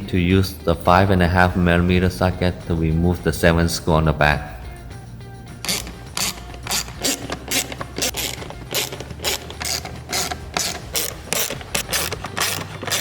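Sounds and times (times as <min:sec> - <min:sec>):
ratchet wrench clicking: 0:05.6 - 0:13.0.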